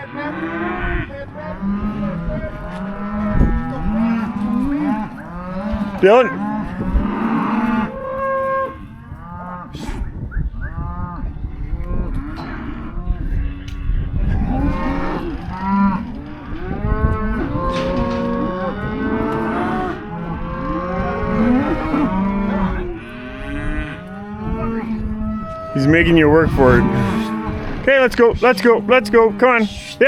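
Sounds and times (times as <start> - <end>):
cattle mooing and bawling: 0.0 - 30.0.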